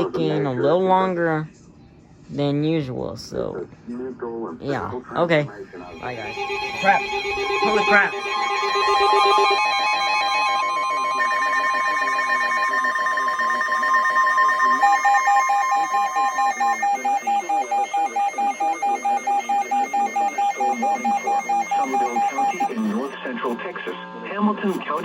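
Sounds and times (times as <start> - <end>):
steady alert tones: 5.6 - 23.6
rapid beeping tone: 5.6 - 24.0.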